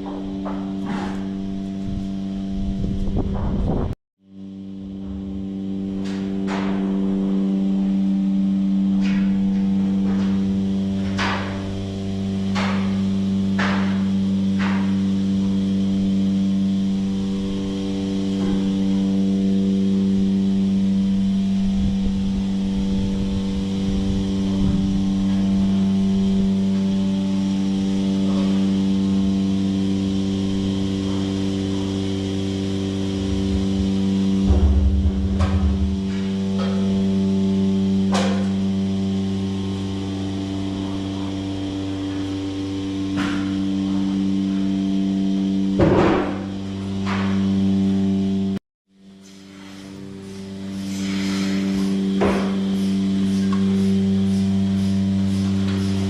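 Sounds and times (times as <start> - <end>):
steady machine hum: 0.0 - 56.0
sharp knocks: 11.0 - 11.7, 12.5 - 15.1, 33.2 - 37.1.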